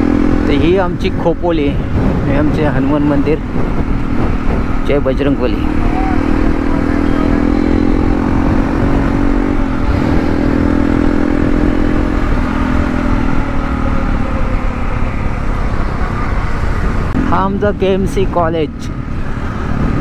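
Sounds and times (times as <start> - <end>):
motorcycle engine running: 0.0 - 20.0
wind and road noise: 0.0 - 20.0.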